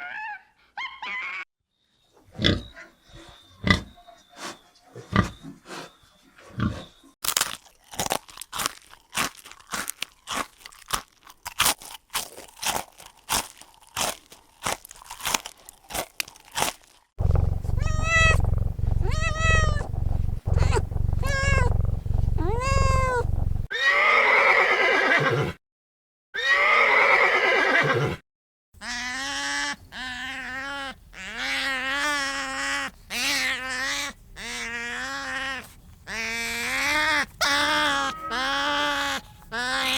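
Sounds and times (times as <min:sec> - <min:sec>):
crisp clicks and crunches: 0:07.2 - 0:17.8
animal calls: 0:17.2 - 0:23.9, 0:28.8 - 0:39.9.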